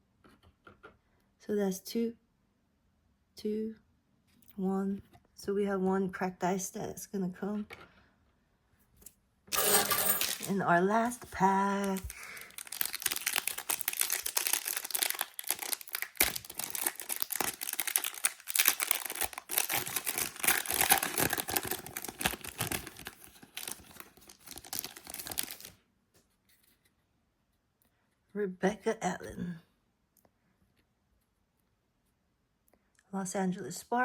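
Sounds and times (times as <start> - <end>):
wrapper tearing and crinkling: 11.7 - 25.8.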